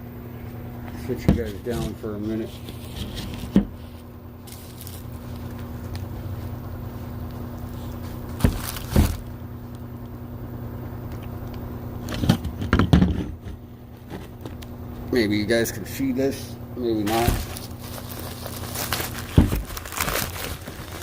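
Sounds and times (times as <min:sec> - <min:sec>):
steady low hum: 0:00.0 - 0:21.0
knocks and clunks of handling: 0:12.1 - 0:14.6, 0:19.2 - 0:19.8.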